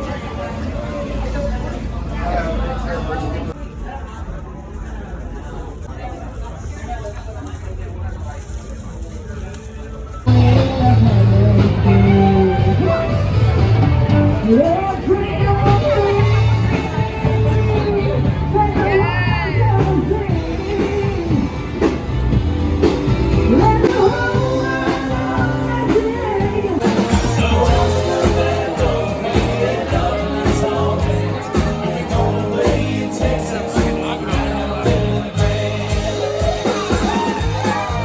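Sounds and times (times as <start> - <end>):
song with voice and guitar: 10.3 - 38.0.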